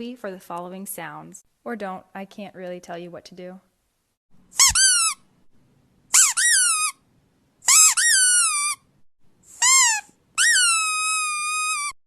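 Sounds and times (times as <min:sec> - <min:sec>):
squeaky dog toy squeaking: 0:04.5 - 0:05.3, 0:06.1 - 0:07.0, 0:07.6 - 0:08.9, 0:09.5 - 0:12.0.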